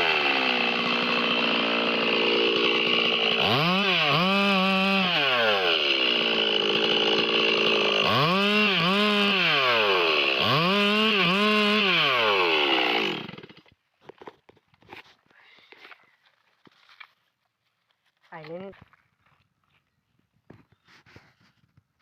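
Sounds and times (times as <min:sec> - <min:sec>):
chainsaw revving: 0:00.0 - 0:13.7.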